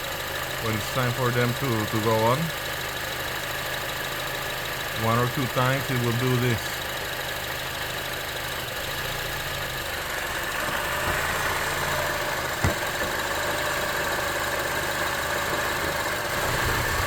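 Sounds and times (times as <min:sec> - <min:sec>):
car engine idling: 0:00.0 - 0:17.0.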